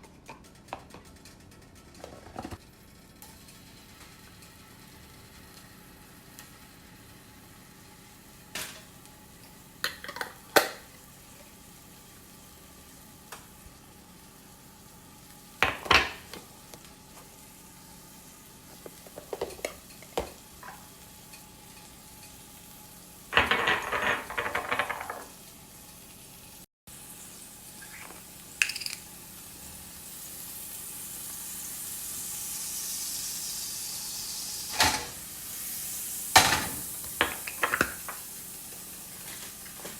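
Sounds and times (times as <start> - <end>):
utensils clattering on dishes: 0.1 - 2.6, 23.4 - 25.3
food frying in pan: 2.0 - 39.9.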